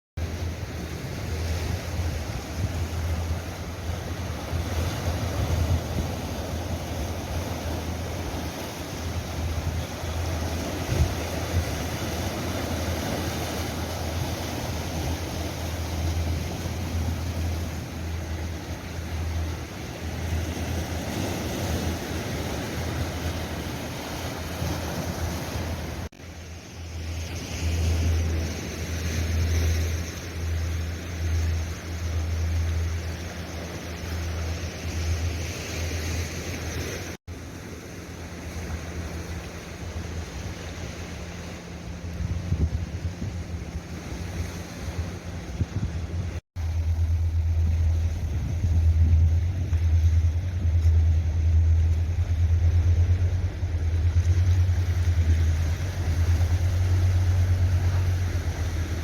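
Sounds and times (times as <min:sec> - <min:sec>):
wind buffeting microphone: 0:00.2 - 0:26.1, 0:41.1 - 0:59.0
waves breaking on shore: 0:00.2 - 0:59.0.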